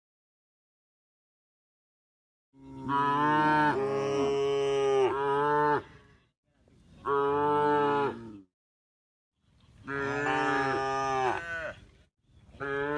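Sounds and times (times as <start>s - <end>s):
cow mooing: 2.6s - 5.9s, 7.1s - 8.4s, 9.8s - 11.8s, 12.6s - 12.9s.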